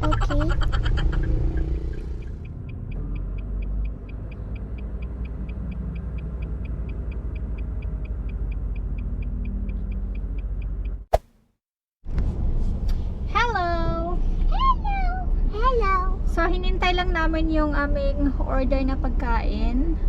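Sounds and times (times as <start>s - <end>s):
car engine rumbling: 0.0s - 11.1s.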